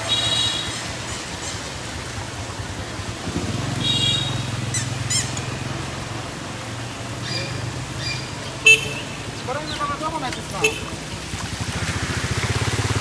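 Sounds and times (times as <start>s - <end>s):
high squeaky chirps: 4.7s - 5.5s.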